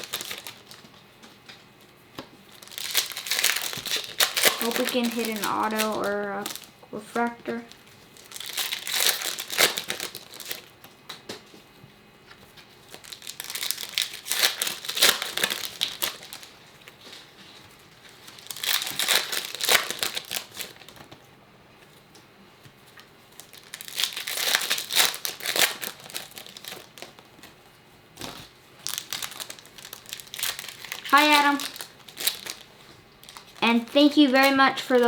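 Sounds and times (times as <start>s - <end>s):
plastic wrapper tearing: 0.0s - 0.9s, 2.5s - 10.7s, 12.8s - 17.3s, 17.9s - 21.2s, 23.3s - 27.5s, 28.2s - 35.0s
plastic wrapping crinkling: 0.0s - 1.0s, 2.4s - 10.9s, 12.4s - 21.2s, 22.8s - 35.0s.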